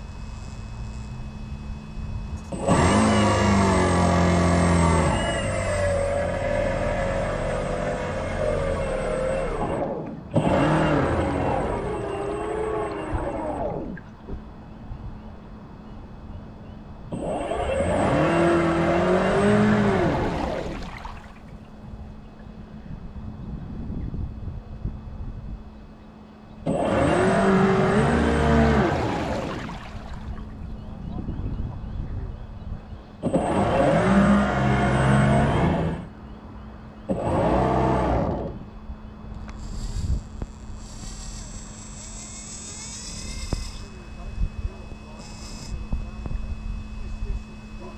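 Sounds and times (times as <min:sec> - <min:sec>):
model boat motor passing: 0:00.0 - 0:14.2, 0:17.1 - 0:21.7, 0:26.7 - 0:30.9, 0:33.3 - 0:36.2.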